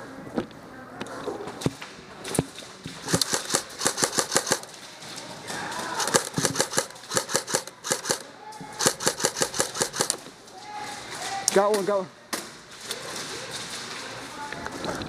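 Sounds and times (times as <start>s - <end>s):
airsoft guns firing: 1.7s - 4.9s, 5.8s - 10.2s.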